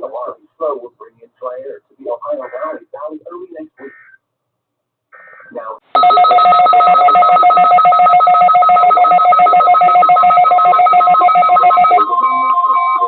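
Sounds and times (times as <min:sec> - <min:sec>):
electronic alert signal trilling: 0:06.0 - 0:13.0
steady alarm tone: 0:06.0 - 0:13.0.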